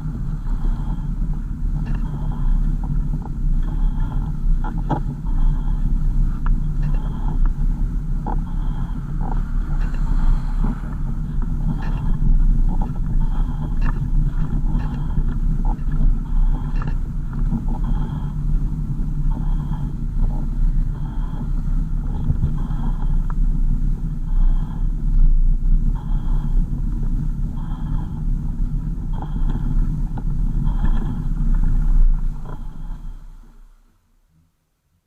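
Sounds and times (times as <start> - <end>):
car engine and road rumble: 0.0 - 34.4.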